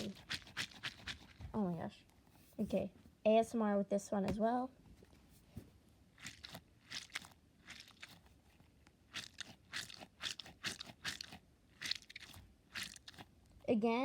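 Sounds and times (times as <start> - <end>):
stress ball squishy crackles: 6.2 - 8.4, 9.1 - 13.3.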